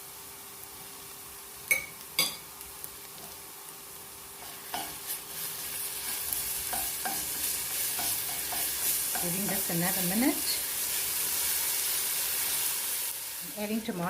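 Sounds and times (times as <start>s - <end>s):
onions sizzling in a pot: 0.0s - 14.0s
utensil stirring: 4.4s - 11.8s.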